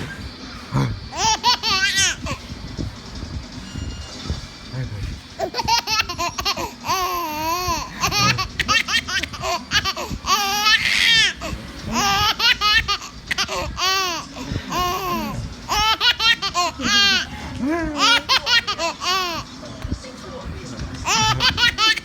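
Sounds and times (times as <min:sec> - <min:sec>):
baby laughing: 0:00.8 - 0:02.5, 0:05.4 - 0:19.9, 0:20.9 - 0:22.0.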